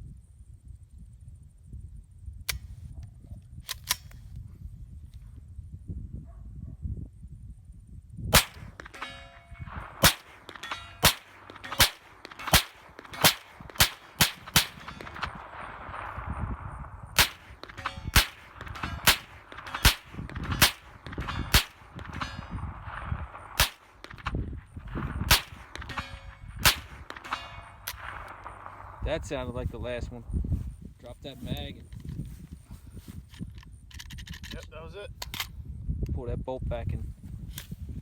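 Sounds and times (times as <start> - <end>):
steel plate target ringing: 8.4 - 16.5, 17.1 - 29.3
rapid gunshots: 8.4 - 29.5.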